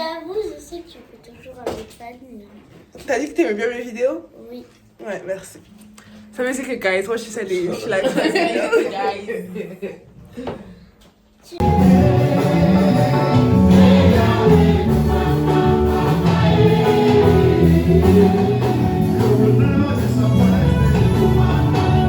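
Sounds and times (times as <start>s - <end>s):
gospel choir singing: 11.6s - 22.0s
instrumental backing: 11.6s - 22.0s.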